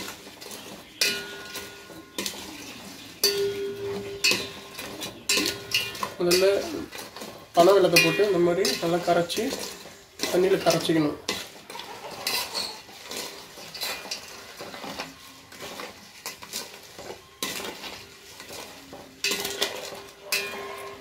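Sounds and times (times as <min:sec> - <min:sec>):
spoon stirring in a pot: 0:00.0 - 0:21.0.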